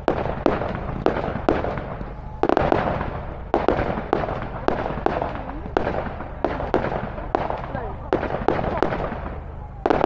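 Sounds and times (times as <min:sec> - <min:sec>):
fireworks bangs: 0:00.0 - 0:10.0.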